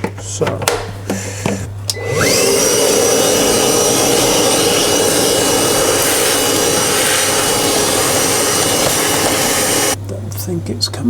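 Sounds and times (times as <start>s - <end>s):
vacuum cleaner motor whining: 1.9s - 10.0s
vacuum sucking up water: 2.0s - 10.0s.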